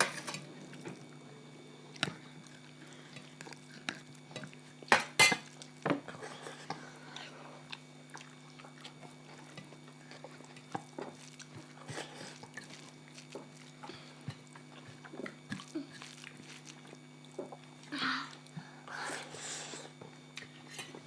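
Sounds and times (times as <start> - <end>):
steady low hum: 0.0 - 21.0
chewing: 1.9 - 18.5.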